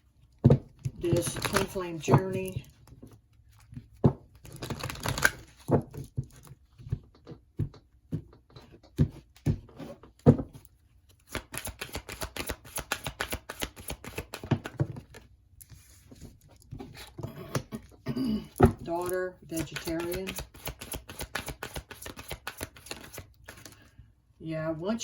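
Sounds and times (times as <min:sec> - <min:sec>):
cards tapping and knocking: 0:00.3 - 0:15.3, 0:16.6 - 0:23.8.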